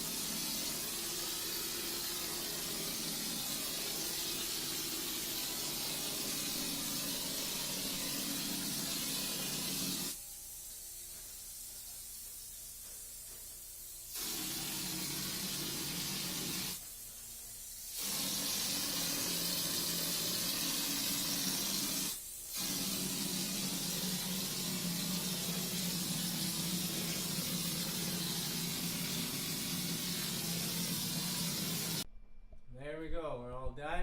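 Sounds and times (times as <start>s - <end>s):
hopper gun spraying hiss: 0.0s - 32.0s.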